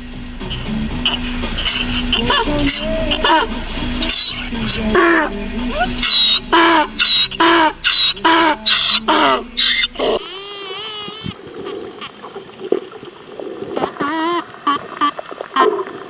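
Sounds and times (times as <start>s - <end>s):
wavering animal calls: 0.5s - 12.2s
short falling animal calls: 1.0s - 11.4s.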